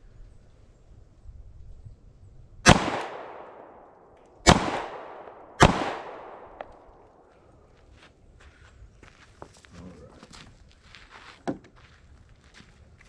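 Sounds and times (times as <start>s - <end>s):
pistol shots with echo: 2.6s - 7.2s.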